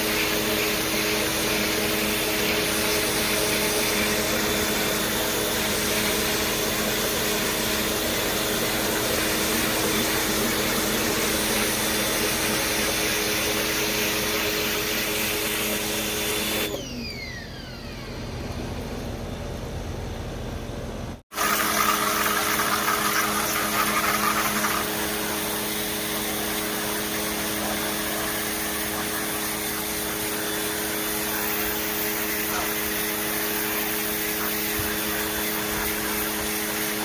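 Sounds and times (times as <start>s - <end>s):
pressure washer motor: 0.0s - 19.6s, 21.3s - 37.0s
motor spinning down whine: 0.0s - 20.6s
water spray hiss: 21.4s - 25.5s, 26.2s - 37.0s.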